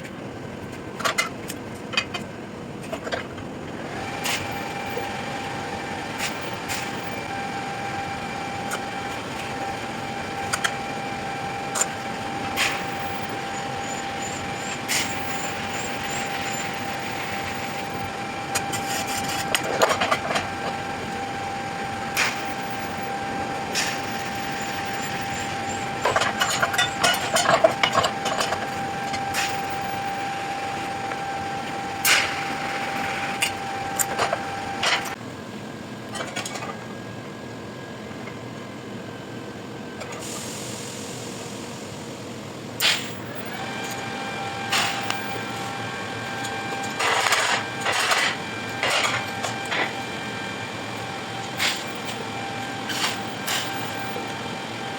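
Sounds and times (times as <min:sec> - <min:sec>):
machine whining: 0:03.0 - 0:35.2, 0:40.0 - 0:54.9.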